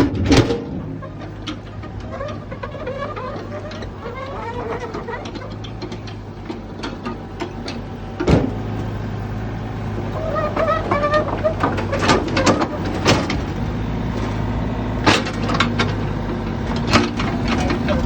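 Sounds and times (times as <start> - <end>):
loud metallic clank: 0.0 - 2.1
heavy machinery engine running: 0.0 - 18.0.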